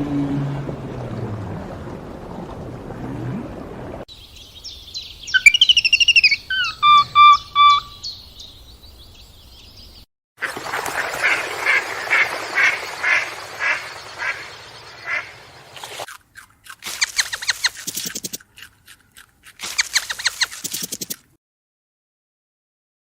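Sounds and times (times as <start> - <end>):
harsh rasping bird calls: 4.1 - 10.0, 11.6 - 16.1
bird chirps: 4.1 - 10.1.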